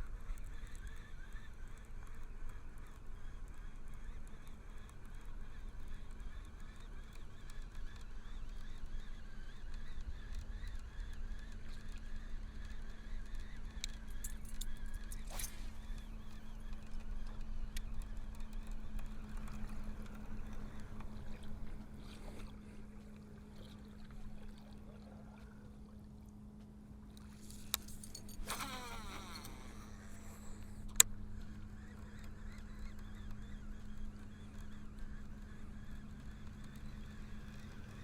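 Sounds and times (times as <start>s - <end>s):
fishing line zipping off reel: 13.4s - 17.0s, 27.2s - 33.8s
sharp click: 13.8s - 17.9s, 27.2s - 31.2s
electric motor humming: 27.2s - 38.0s.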